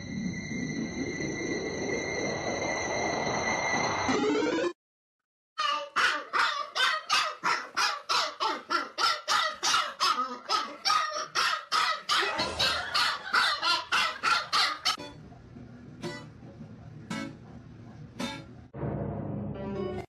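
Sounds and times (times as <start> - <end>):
dog barking: 5.6 - 15.0, 16.4 - 18.4.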